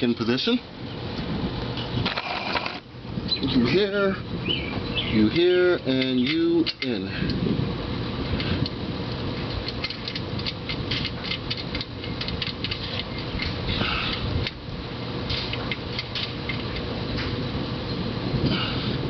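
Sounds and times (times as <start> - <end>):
steady background hum: 0.0 - 19.0.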